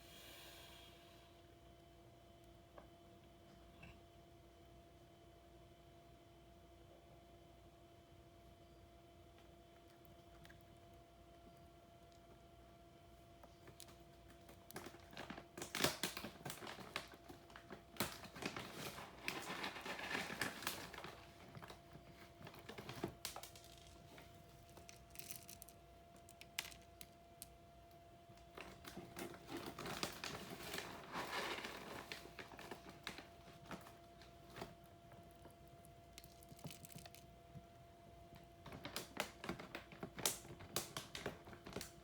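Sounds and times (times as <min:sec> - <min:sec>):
faint steady hum: 0:00.0 - 0:42.0
hamster eating crinkling and clicking: 0:09.4 - 0:42.0.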